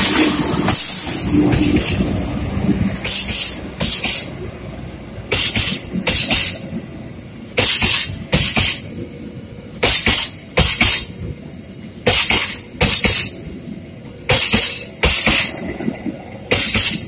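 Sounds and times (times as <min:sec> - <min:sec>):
train wheels clattering over rail joint: 0:00.0 - 0:02.0, 0:03.0 - 0:04.4, 0:05.3 - 0:06.7, 0:07.6 - 0:09.0, 0:09.8 - 0:11.2, 0:12.0 - 0:13.4, 0:14.3 - 0:15.7, 0:16.5 - 0:17.0.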